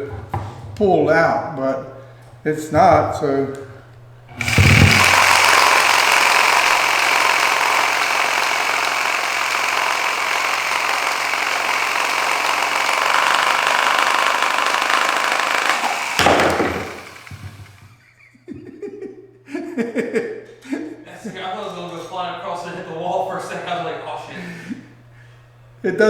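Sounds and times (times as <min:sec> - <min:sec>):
reciprocating saw shaking: 0:04.3 - 0:17.9.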